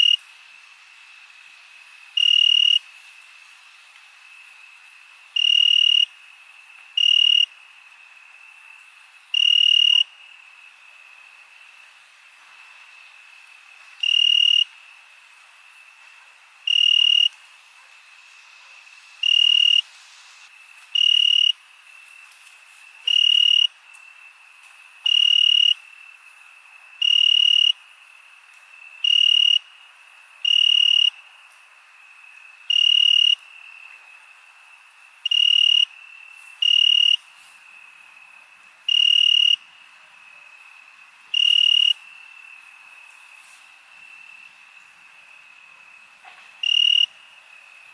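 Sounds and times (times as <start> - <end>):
crickets trilling: 0.0 - 47.9
loud cricket chirps: 0.0 - 47.9.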